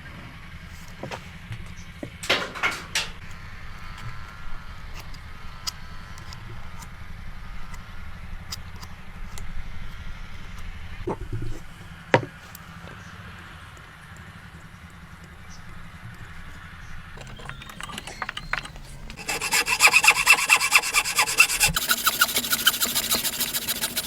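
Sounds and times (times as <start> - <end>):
woodworking knocks and taps: 17.2 - 23.6.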